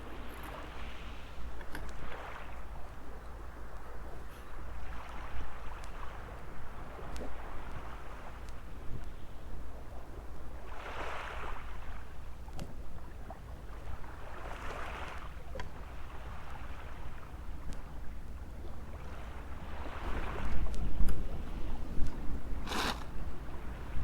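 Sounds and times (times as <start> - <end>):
small waves washing onto sand: 0.0 - 24.0
wind rumbling on microphone: 15.8 - 24.0.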